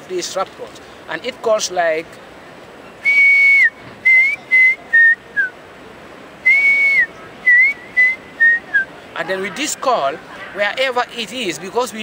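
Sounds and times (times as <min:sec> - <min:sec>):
man whistling bird call: 0:03.0 - 0:05.6, 0:06.4 - 0:08.9.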